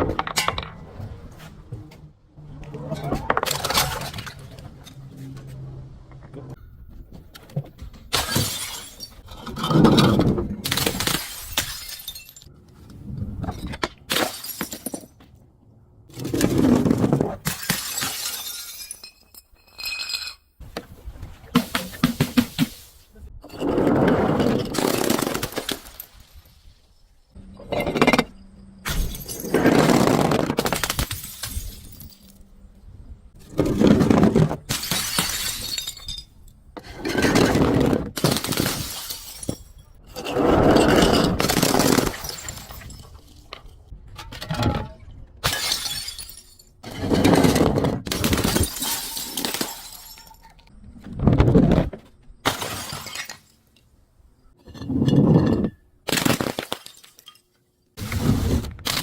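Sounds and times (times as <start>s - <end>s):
glass bottles crushed and shattering: 3.4s - 4.5s, 8.1s - 12.6s, 13.5s - 15.2s, 16.2s - 20.5s, 23.5s - 26.7s, 27.5s - 32.6s, 33.5s - 44.8s, 45.4s - 50.7s, 52.4s - 53.8s, 54.7s - 58.2s.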